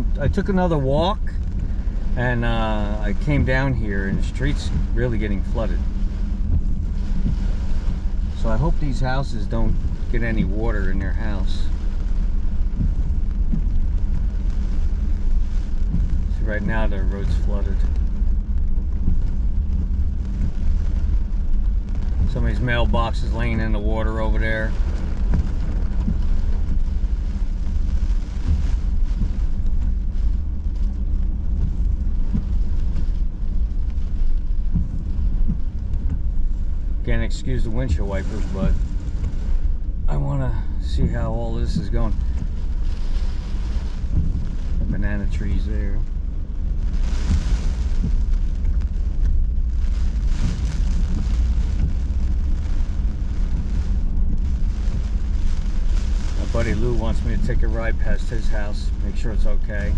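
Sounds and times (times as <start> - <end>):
windshield wipers running: 0.0 - 45.6
car driving rumble inside cabin: 0.0 - 59.9
heavy rain on car: 0.0 - 59.9.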